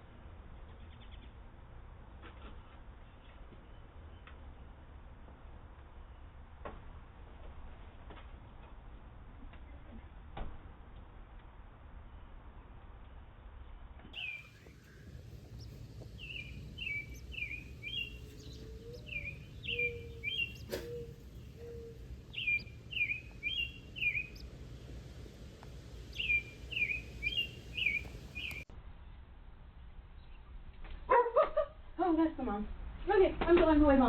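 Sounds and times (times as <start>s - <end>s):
bird chirping: 14.2s - 25.0s, 25.6s - 28.7s.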